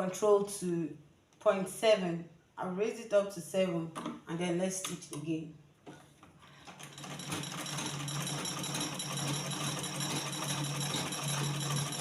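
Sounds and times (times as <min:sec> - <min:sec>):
sewing machine stitching clatter: 0:06.7 - 0:12.0.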